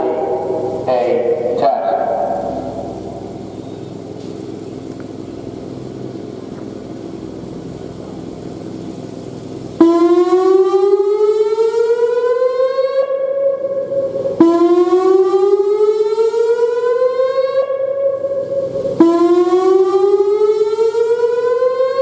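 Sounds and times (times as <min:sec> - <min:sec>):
warning siren whoop tone: 0:00.0 - 0:04.1, 0:09.8 - 0:22.0.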